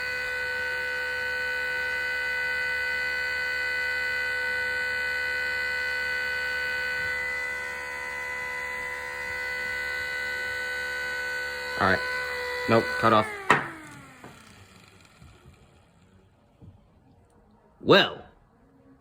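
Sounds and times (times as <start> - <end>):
warning siren steady tone: 0.0 - 14.5.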